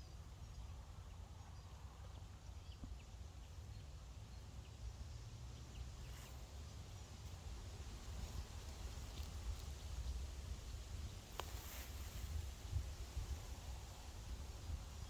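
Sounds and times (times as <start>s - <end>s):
low wind rumble: 5.0s - 15.0s.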